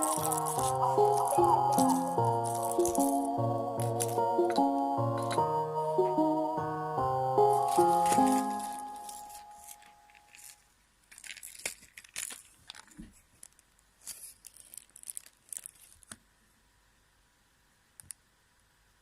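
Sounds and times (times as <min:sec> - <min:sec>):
packaging crinkling and tearing: 0:00.0 - 0:04.6, 0:07.5 - 0:16.2
music: 0:00.0 - 0:10.1.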